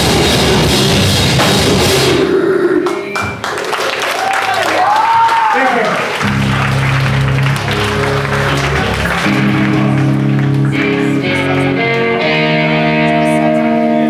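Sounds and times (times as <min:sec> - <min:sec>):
guitar chords ringing: 0:06.2 - 0:14.0.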